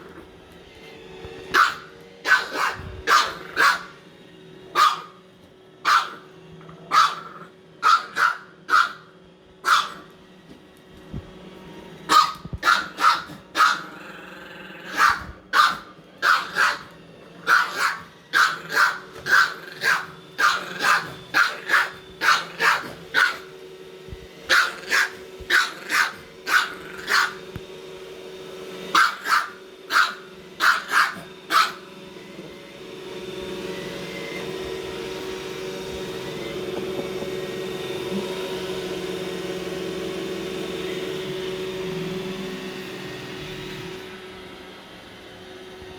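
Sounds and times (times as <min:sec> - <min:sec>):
robot vacuum humming: 0:00.0 - 0:45.9
dog barking: 0:01.5 - 0:04.0, 0:04.7 - 0:05.2, 0:05.8 - 0:10.1, 0:12.1 - 0:14.0, 0:14.8 - 0:23.5, 0:24.5 - 0:27.4, 0:28.9 - 0:31.9.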